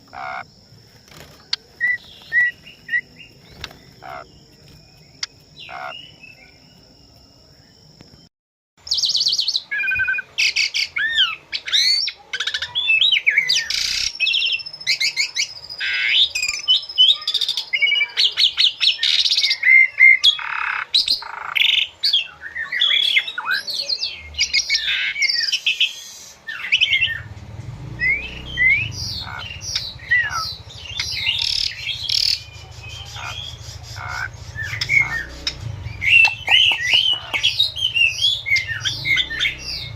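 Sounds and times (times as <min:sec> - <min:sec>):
low steady rumble: 0:27.0 - 0:39.9.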